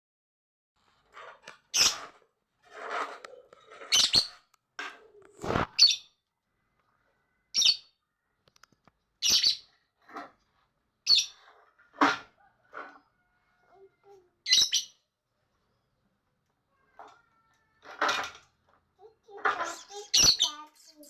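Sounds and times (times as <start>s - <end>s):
lovebird chirping: 3.9s - 4.4s, 7.5s - 8.0s, 19.7s - 21.0s.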